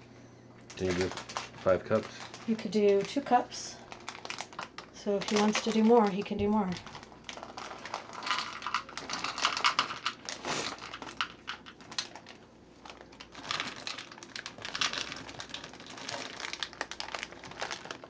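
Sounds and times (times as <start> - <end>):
bag crinkling: 0.6 - 18.0.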